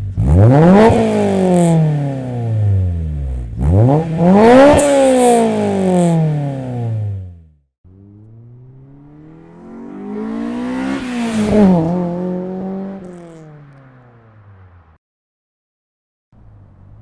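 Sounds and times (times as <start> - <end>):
car engine accelerating past: 7.9 - 15.0.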